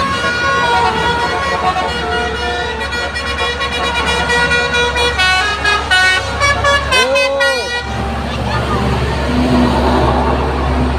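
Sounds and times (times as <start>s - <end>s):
bus musical horn melody: 0.0s - 8.5s.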